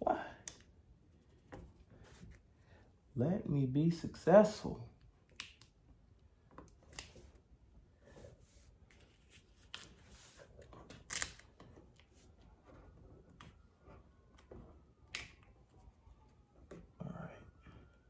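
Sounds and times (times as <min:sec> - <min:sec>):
plastic film rustling and clicking: 0:08.9 - 0:15.8.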